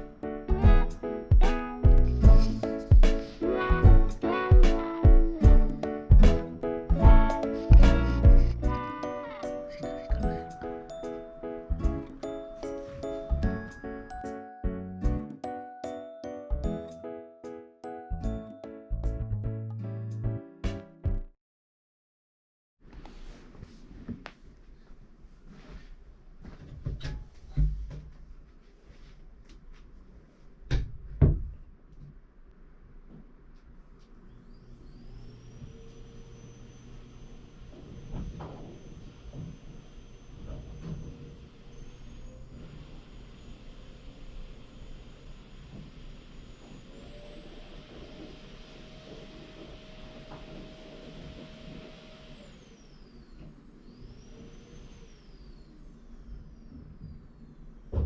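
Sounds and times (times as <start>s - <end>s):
vacuum cleaner running: 0.0s - 11.0s, 34.4s - 57.1s
dull knocks and thumps: 3.8s - 8.6s.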